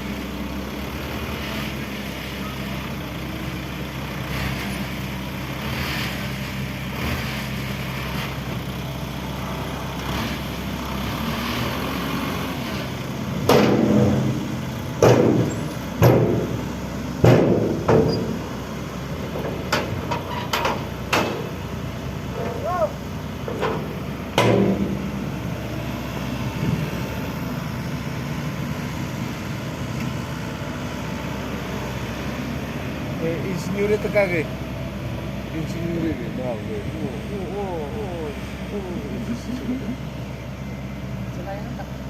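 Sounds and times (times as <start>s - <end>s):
heavy diesel engine running: 0.0s - 42.0s
loud knocks: 15.0s - 16.6s, 17.2s - 18.4s.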